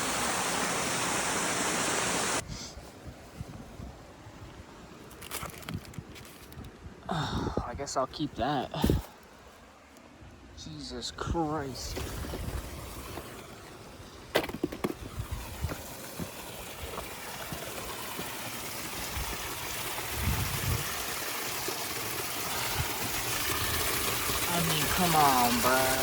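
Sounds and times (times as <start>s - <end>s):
water rushing and splashing: 0.0s - 2.4s, 11.4s - 14.3s, 14.9s - 26.0s.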